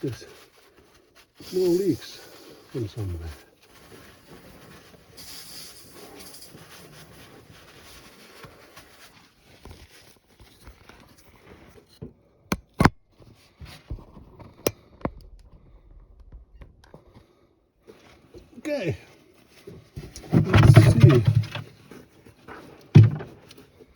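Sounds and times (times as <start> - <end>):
rustling and scraping: 0.1 - 12.2, 16.9 - 23.9
sharp clicks and knocks: 22.9 - 23.4.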